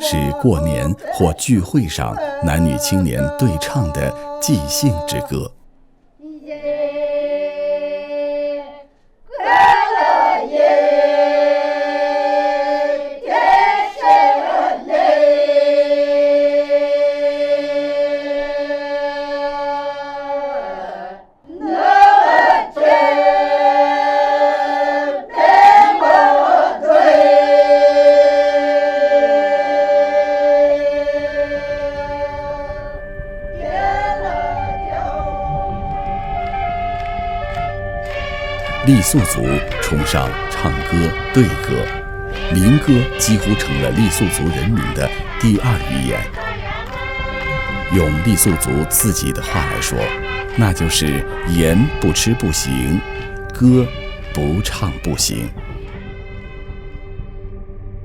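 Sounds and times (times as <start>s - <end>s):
group singing unaccompanied: 6.2s - 32.6s, 38.2s - 48.9s.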